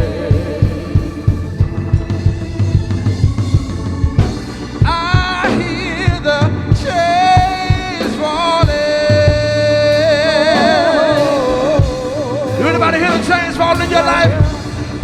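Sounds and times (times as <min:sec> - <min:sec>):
band playing gospel music: 0:00.0 - 0:15.0.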